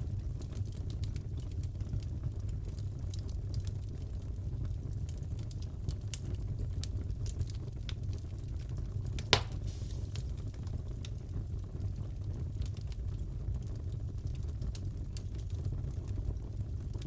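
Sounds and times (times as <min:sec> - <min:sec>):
wood fire crackling: 0:00.0 - 0:17.0
fire popping loudly: 0:08.9 - 0:11.4.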